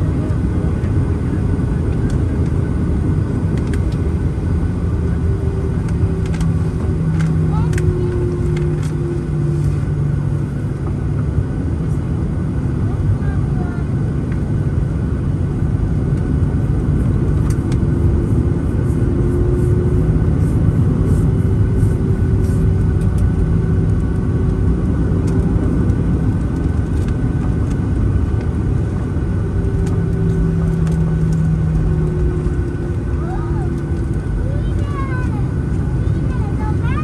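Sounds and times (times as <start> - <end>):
jet engine cabin rumble: 0.0 - 37.0
low hum: 0.0 - 37.0.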